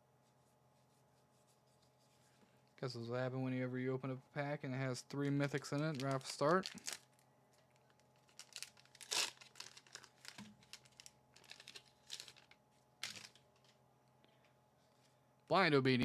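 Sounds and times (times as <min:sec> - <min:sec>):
foil wrapper crinkling and tearing: 0:05.1 - 0:07.2, 0:07.8 - 0:13.7.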